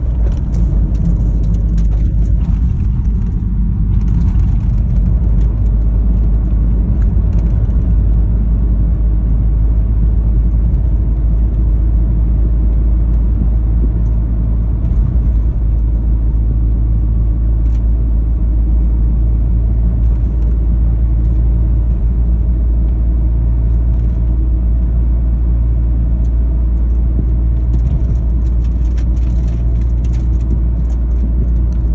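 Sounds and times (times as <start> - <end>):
suspension clicks and knocks: 0.0 - 8.1, 26.2 - 31.9
car driving rumble: 0.0 - 31.9.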